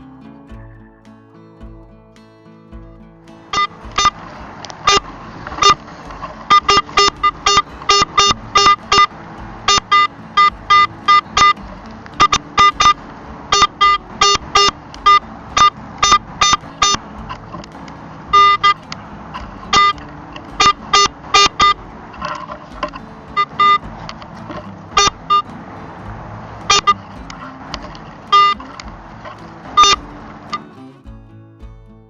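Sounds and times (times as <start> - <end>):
metal detector beeps: 4.9 - 5.8, 6.5 - 11.6, 12.2 - 17.0, 18.3 - 18.8, 19.7 - 23.9, 24.5 - 25.5, 28.3 - 28.7, 29.8 - 30.6.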